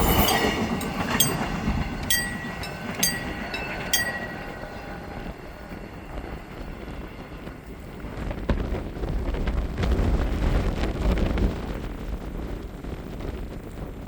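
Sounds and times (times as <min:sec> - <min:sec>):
passenger train passing: 0:00.0 - 0:10.3
wind buffeting microphone: 0:00.0 - 0:14.0.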